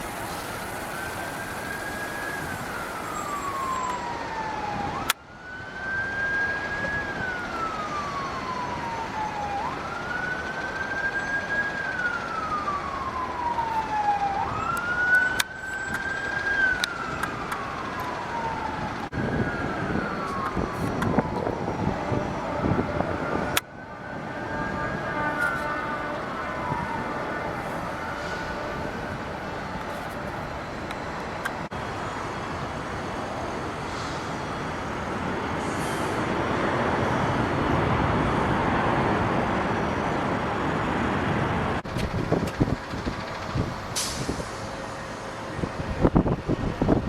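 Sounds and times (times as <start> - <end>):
emergency siren wailing: 0.0 - 47.0
second siren: 0.0 - 47.0.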